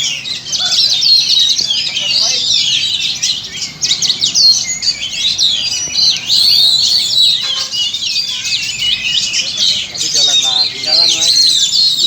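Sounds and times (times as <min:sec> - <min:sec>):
birds singing whistles and trills: 0:00.0 - 0:12.0.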